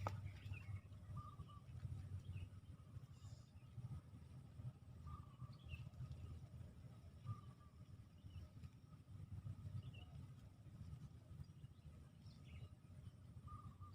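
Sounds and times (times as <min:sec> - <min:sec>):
faint bird chirps: 0:00.0 - 0:04.1, 0:05.0 - 0:06.5, 0:07.1 - 0:08.6, 0:11.3 - 0:13.9.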